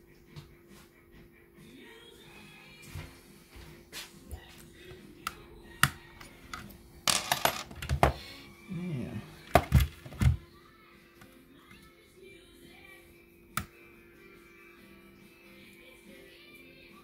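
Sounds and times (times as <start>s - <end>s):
metal parts clicking and clinking: 6.5s - 7.9s
metal parts rattling: 7.1s - 7.9s.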